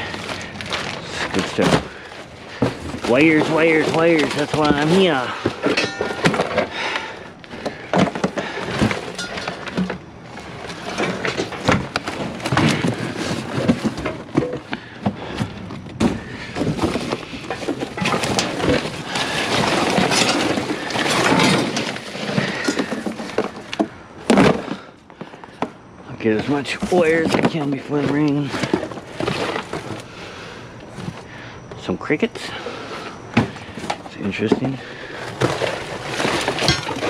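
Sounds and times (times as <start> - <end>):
metal junk clattering in dumpster: 0.0 - 24.9, 26.2 - 30.2, 32.4 - 37.0.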